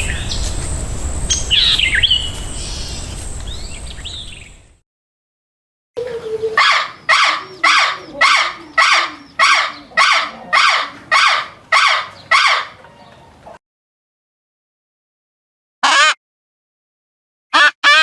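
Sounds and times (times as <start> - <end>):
animal calling loudly: 6.0 - 12.9.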